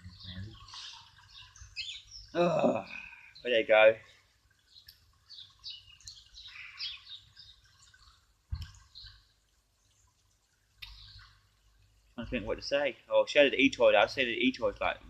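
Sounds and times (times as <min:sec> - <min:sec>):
bird chirping: 0:00.0 - 0:03.9, 0:04.6 - 0:10.2, 0:10.8 - 0:11.4.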